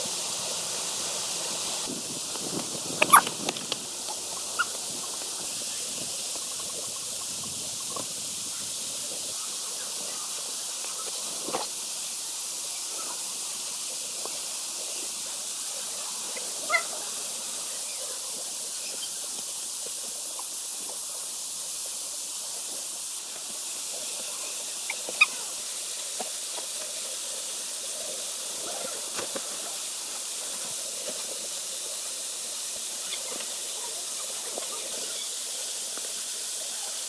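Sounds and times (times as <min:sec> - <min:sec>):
high-pitched outdoor hiss: 0:00.0 - 0:37.0
sharp chirps: 0:03.0 - 0:03.5.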